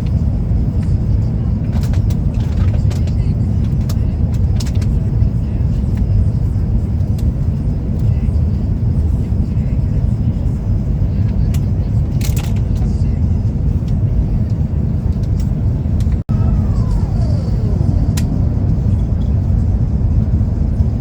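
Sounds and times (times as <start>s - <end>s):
engine and road rumble: 0.0s - 21.0s
falling whine: 16.0s - 21.0s.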